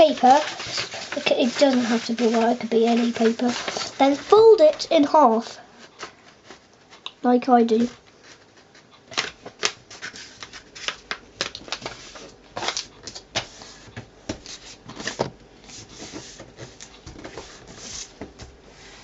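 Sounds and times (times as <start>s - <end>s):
paper being folded and creased: 0.0s - 7.0s, 8.1s - 19.0s.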